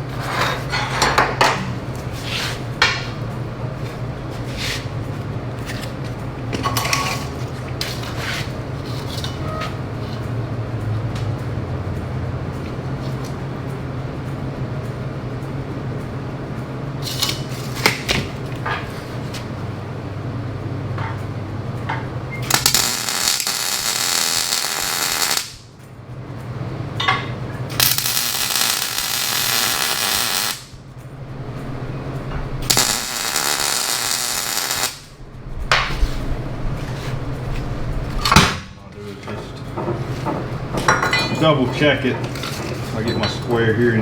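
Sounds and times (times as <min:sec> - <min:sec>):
low hum: 0:30.7 - 0:40.9.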